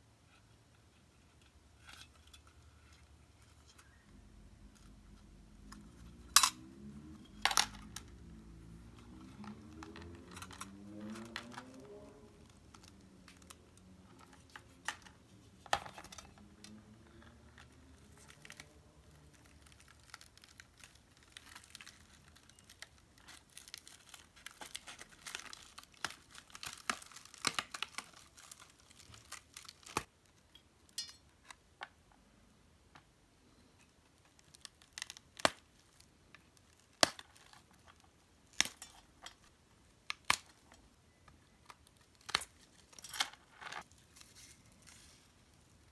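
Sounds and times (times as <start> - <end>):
paper crinkling: 17.1 - 30.1.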